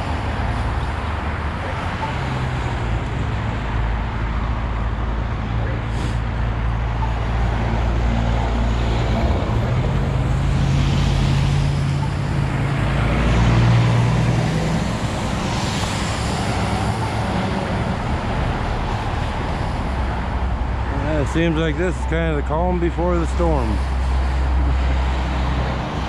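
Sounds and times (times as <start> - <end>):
vehicle engines humming: 0.0 - 26.0.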